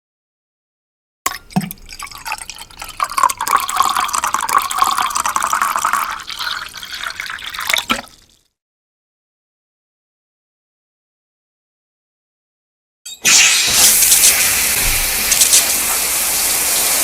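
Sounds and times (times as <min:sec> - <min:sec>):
water splashing and trickling: 0:01.3 - 0:08.4.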